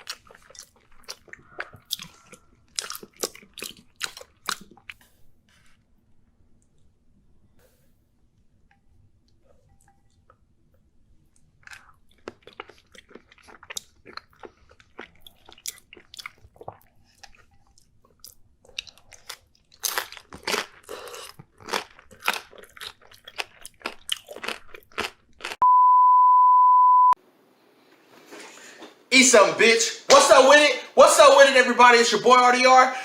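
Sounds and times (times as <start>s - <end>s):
crunching and chewing food: 0.0s - 7.5s, 8.4s - 25.6s
steady high beep: 25.6s - 27.2s.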